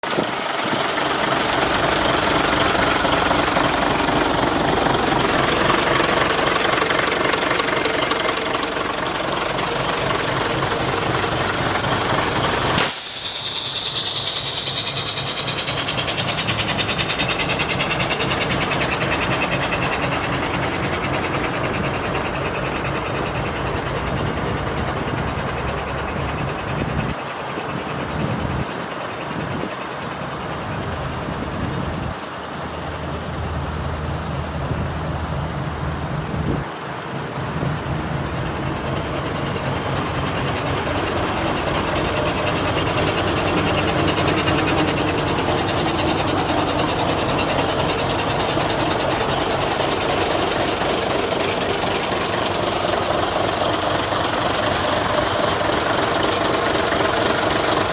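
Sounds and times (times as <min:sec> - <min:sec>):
diesel engine running: 0:00.0 - 0:57.9
hiss: 0:00.1 - 0:28.0.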